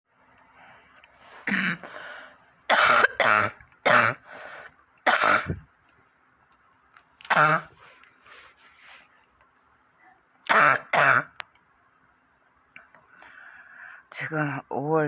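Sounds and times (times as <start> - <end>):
person coughing: 1.4 - 2.1, 2.7 - 4.2, 5.1 - 5.6, 7.3 - 7.7, 10.5 - 11.3.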